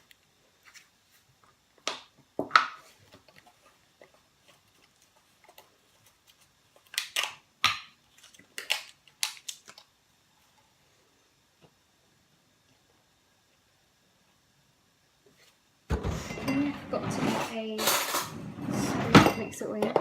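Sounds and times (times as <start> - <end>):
kitchen containers rustling and knocking: 15.9 - 20.0.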